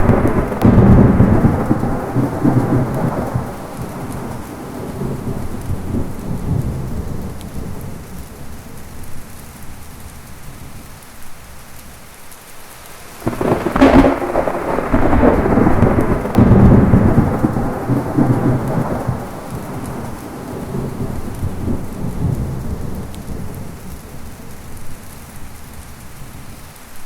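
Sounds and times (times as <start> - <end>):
sharp thunderclap: 0.0 - 9.2, 13.2 - 24.8
rolling thunder: 0.0 - 10.9, 13.2 - 26.6
heavy rain: 0.0 - 27.0.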